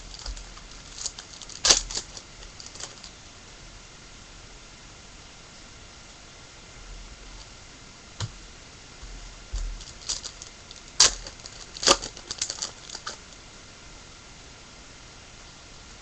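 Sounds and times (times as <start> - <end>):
cards and wrapper crackling: 0.0 - 3.1, 9.8 - 13.3.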